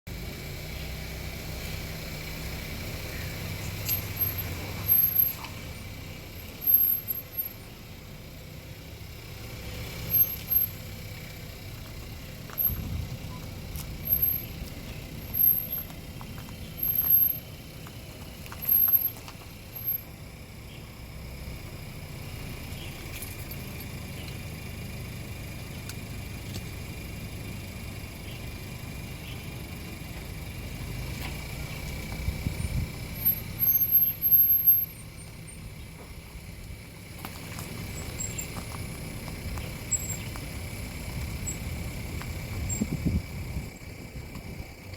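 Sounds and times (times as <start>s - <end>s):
car low rumble: 0.1s - 44.9s
high-pitched car squeaks: 18.6s - 19.2s, 32.6s - 35.6s.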